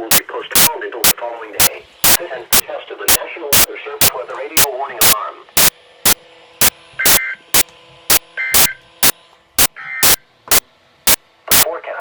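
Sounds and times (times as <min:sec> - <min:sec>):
radio static hiss: 0:00.0 - 0:12.0
steady hum: 0:00.0 - 0:12.0.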